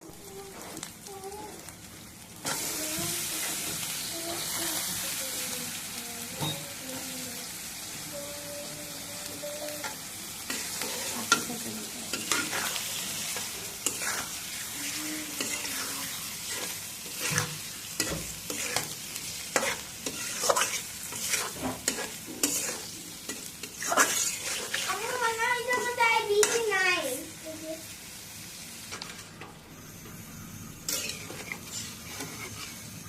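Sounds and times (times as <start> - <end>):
food sizzling in hot oil: 0.0 - 33.0
spatula scraping a pan: 9.8 - 26.8, 30.9 - 33.0.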